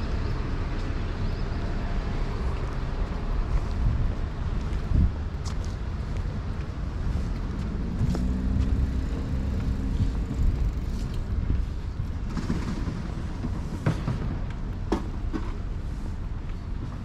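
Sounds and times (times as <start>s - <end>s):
road traffic rumble: 0.0s - 17.0s
vehicle engine hum: 0.0s - 17.0s.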